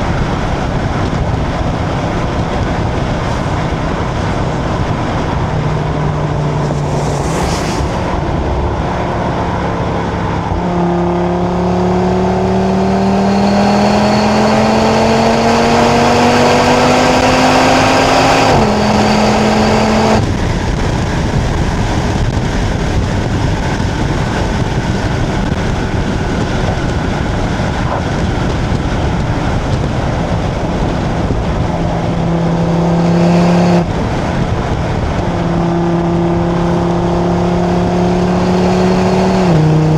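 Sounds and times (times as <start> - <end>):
car engine exhaust: 0.0 - 39.9
wind and tyre noise: 0.0 - 39.9.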